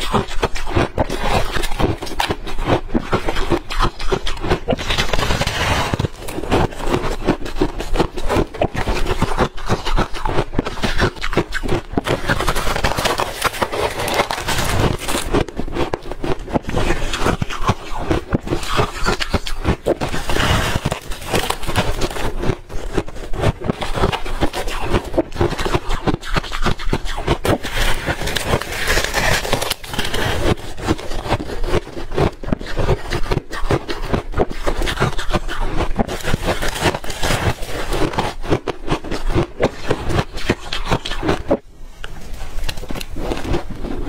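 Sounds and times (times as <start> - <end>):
ice being bitten crunching: 0.0 - 44.0.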